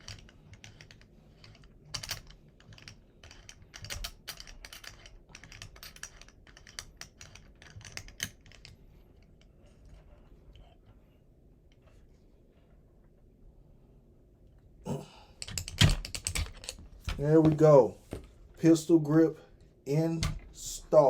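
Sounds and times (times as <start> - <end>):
allen wrench clicking on screw: 0.0 - 8.7.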